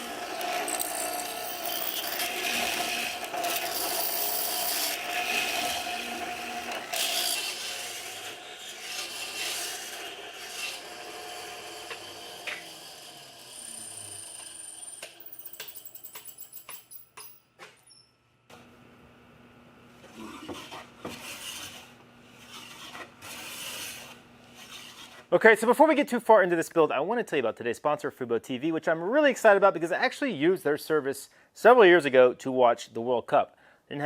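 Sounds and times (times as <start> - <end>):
tool rasping on wood: 0.0 - 10.9, 20.4 - 25.3.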